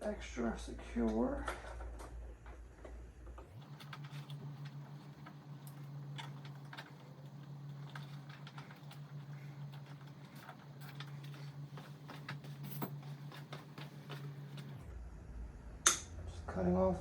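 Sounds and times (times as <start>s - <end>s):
steady low hum: 3.5s - 15.0s.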